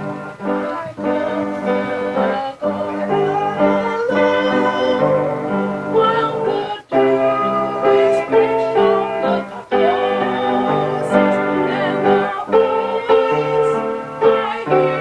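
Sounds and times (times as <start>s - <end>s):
music with held chords: 0.0s - 15.0s.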